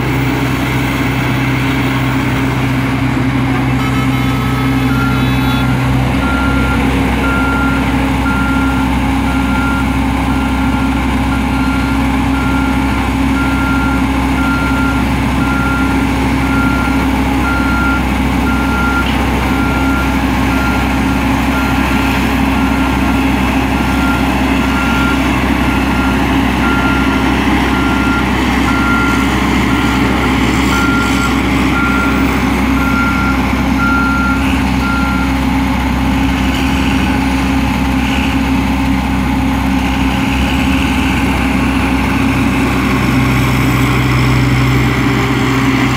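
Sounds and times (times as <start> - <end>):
diesel engine running: 0.0 - 45.9
reversing alarm beeping: 3.7 - 35.5.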